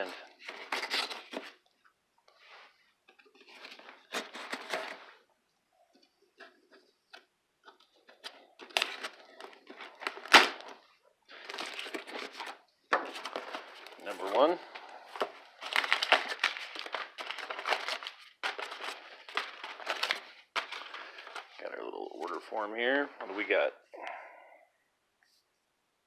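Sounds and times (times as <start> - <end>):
packing tape ripping: 8.6 - 10.8, 15.6 - 21.2.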